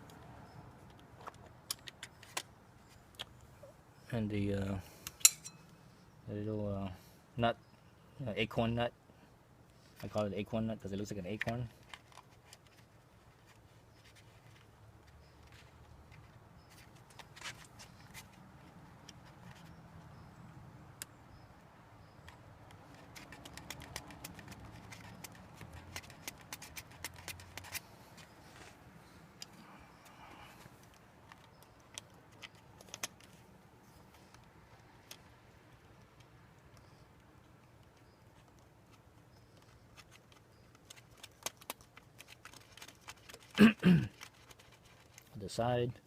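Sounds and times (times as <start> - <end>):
hand tools clicking on metal: 5.0 - 5.6.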